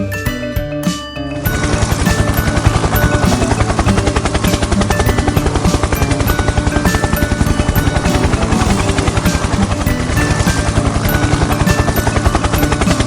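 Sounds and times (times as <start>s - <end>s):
music with fast pulsing beat: 0.0s - 13.0s.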